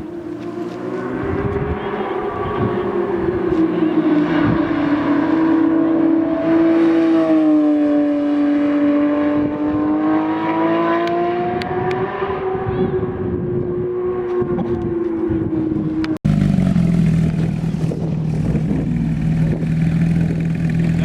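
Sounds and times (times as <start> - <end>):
car engine running hard: 0.0 - 7.1, 14.1 - 21.0
road and wind noise: 0.0 - 21.0.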